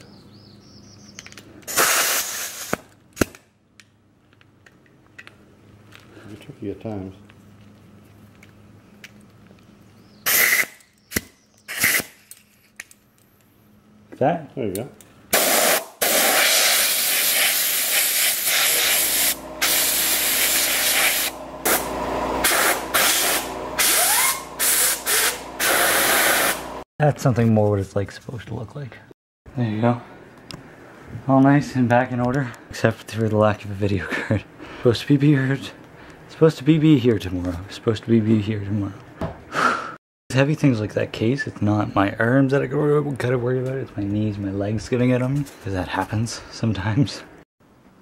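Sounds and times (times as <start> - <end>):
burst of air blowing dust: 1.7 - 2.8, 15.4 - 26.7.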